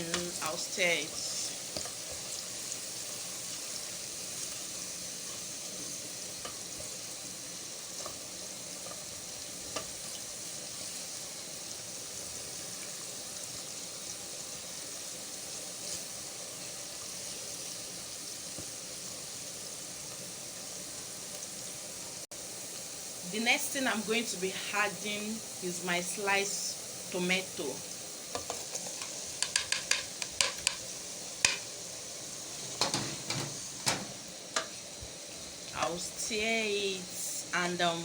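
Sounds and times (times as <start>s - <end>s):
onions sizzling in oil: 0.0s - 38.0s.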